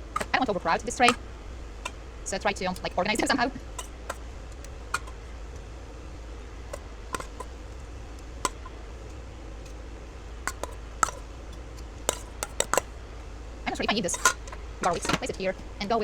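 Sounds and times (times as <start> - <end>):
metal spoon tapping metal tray: 0.0 - 1.2, 1.8 - 5.2, 6.7 - 7.6, 8.5 - 8.7, 10.5 - 12.9, 13.8 - 15.4
steady low hum: 0.0 - 16.0.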